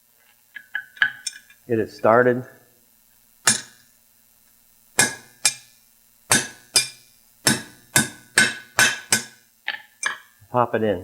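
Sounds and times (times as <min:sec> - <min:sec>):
hammer striking metal: 0:03.5 - 0:03.8, 0:05.0 - 0:05.7, 0:06.3 - 0:09.4.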